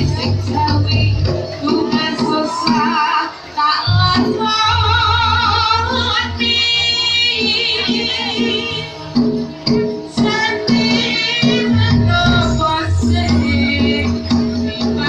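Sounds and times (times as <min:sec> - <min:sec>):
bass line: 0:00.0 - 0:02.3, 0:03.9 - 0:09.0, 0:11.4 - 0:15.0
woman singing with vibrato: 0:00.0 - 0:09.1, 0:10.1 - 0:15.0
steady beat: 0:11.6 - 0:15.0.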